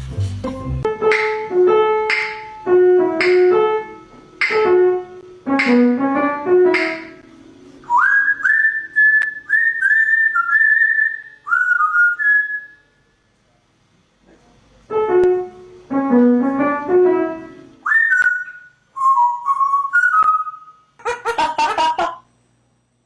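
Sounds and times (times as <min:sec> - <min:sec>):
keyboard instrument notes: 0:00.4 - 0:07.2
pet bird whistling a tune: 0:07.9 - 0:12.9, 0:17.8 - 0:20.9.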